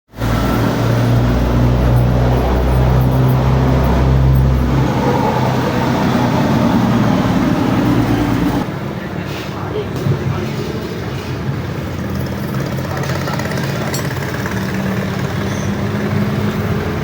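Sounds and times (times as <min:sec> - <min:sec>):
motorcycle engine running: 0:12.2 - 0:17.0.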